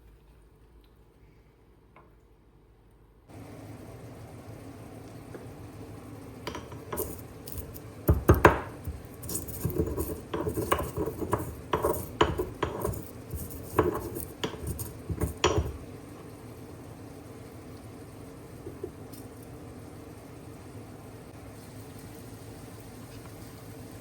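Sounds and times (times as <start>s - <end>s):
dishes and cutlery clinking: 6.5s - 15.8s.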